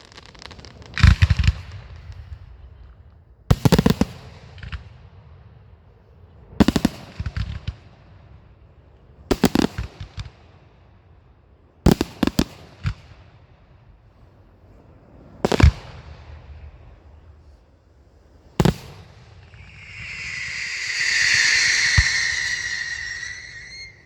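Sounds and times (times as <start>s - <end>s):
fireworks bangs: 18.6s - 24.0s.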